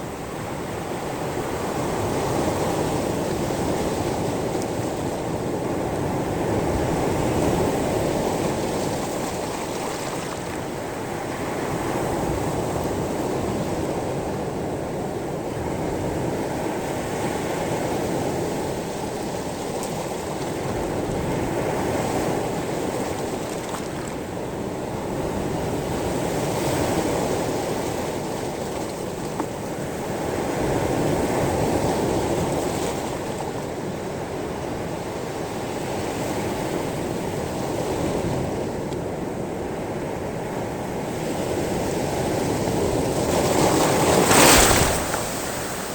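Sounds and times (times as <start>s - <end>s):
sea waves on pebble beach: 2.0s - 13.8s, 16.8s - 33.9s, 42.8s - 45.9s.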